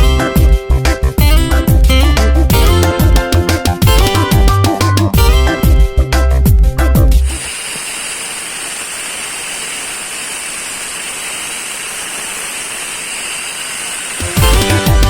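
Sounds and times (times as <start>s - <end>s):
angle grinder whirring: 7.2s - 14.9s.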